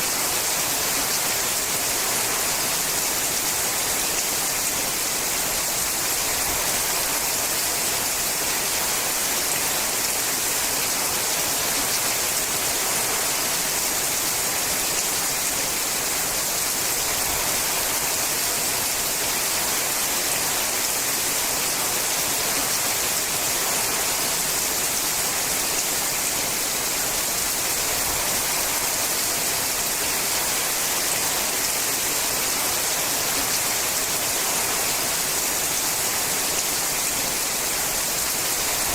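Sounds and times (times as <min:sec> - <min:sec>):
rain on a metal roof: 0:00.0 - 0:38.9.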